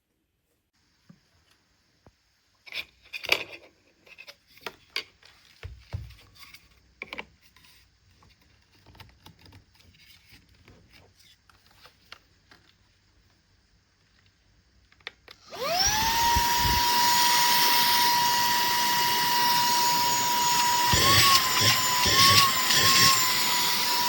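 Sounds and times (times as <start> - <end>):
handling clicks knocks and scraping: 2.6 - 12.8.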